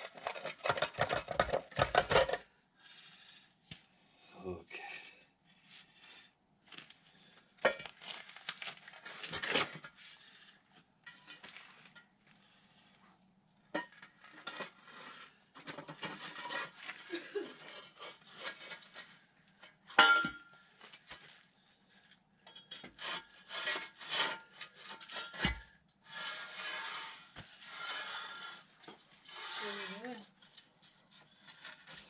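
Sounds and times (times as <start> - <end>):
scraping and rubbing: 0.0 - 3.1, 13.9 - 19.3, 22.7 - 32.0.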